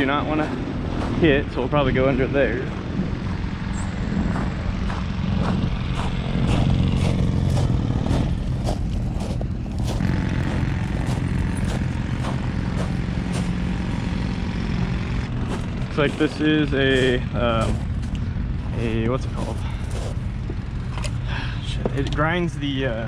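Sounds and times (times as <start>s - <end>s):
heavy diesel engine running: 0.0s - 23.0s
clattering clicks and knocks: 20.4s - 22.3s.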